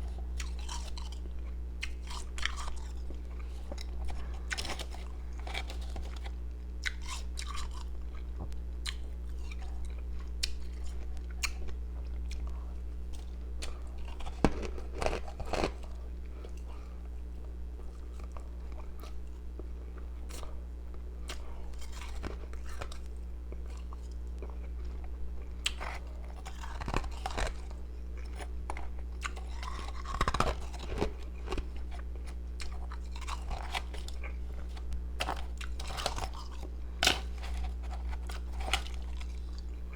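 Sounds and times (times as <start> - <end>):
person chewing ice: 0.0 - 39.9
steady low hum: 0.0 - 39.9.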